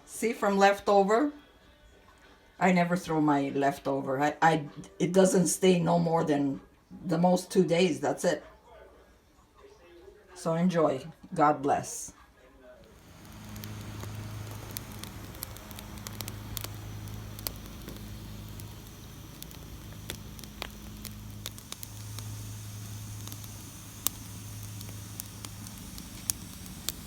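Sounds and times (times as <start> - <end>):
fat popping and crackling: 12.8 - 27.0
food sizzling in a pan: 12.8 - 27.0
low hum: 12.8 - 27.0.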